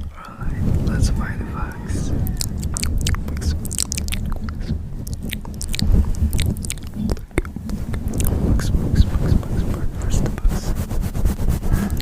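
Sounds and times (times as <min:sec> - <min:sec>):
steady low rumble: 0:00.0 - 0:12.0
insect chewing crisp clicks: 0:02.2 - 0:08.3.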